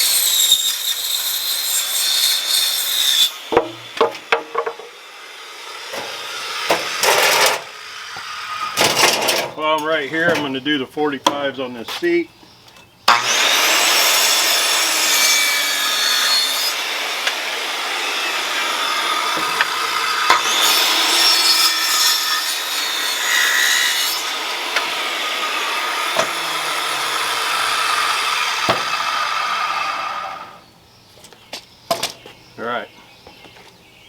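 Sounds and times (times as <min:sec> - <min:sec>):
power saw cutting wood: 0:00.0 - 0:09.6, 0:13.1 - 0:30.6.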